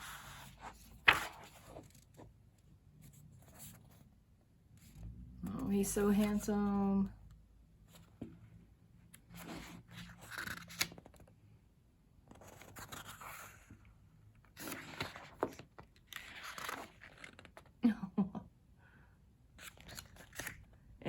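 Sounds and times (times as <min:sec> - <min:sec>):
paper pages rustling: 0:00.0 - 0:02.3, 0:09.3 - 0:11.3, 0:12.3 - 0:13.8, 0:14.5 - 0:17.7, 0:19.6 - 0:20.7.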